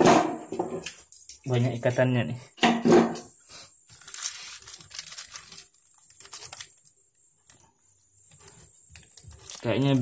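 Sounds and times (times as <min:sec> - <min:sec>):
packaging wrap crinkling: 0:03.9 - 0:07.7, 0:08.3 - 0:10.0.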